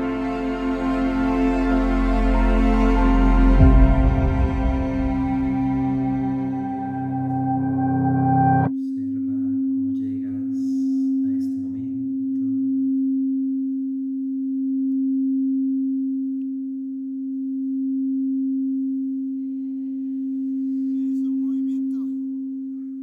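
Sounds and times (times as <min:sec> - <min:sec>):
singing bowl ringing: 0:00.0 - 0:08.7
music: 0:00.0 - 0:11.7.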